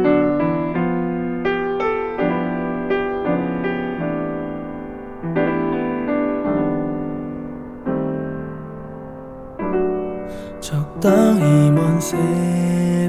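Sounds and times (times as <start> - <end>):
slow piano chords: 0.0 - 13.0.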